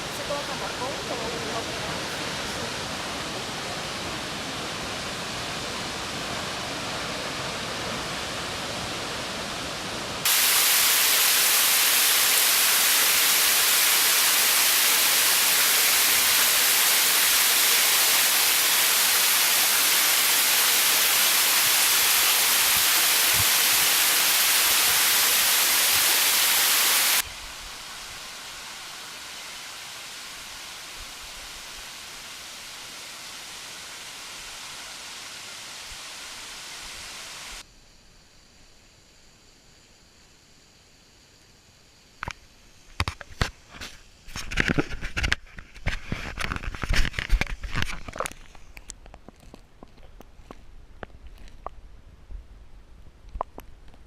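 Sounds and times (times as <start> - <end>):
waterfall roar: 0.0 - 37.6.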